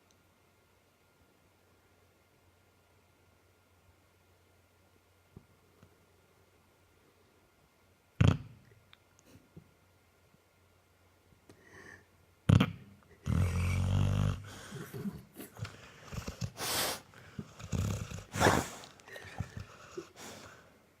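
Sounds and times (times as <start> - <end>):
dog snoring: 12.5 - 20.6
dog snorting: 13.2 - 20.6.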